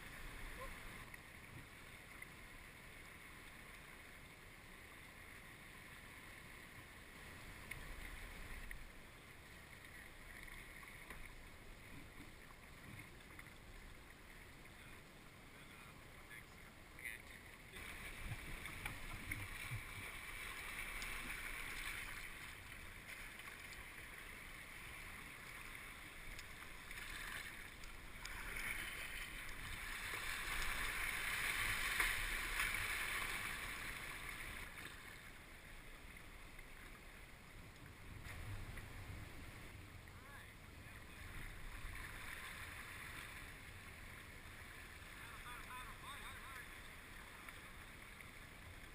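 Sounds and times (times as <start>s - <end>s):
water splashing around a kayak: 0.0s - 48.9s.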